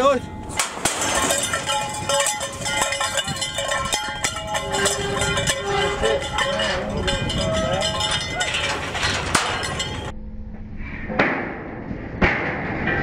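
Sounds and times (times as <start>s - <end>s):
bell clanking: 0.0s - 10.1s.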